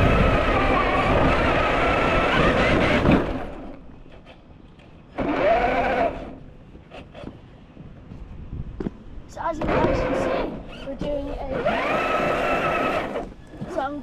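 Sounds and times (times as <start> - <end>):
electric motor whining: 0.0 - 4.4, 5.1 - 6.4, 9.5 - 13.8.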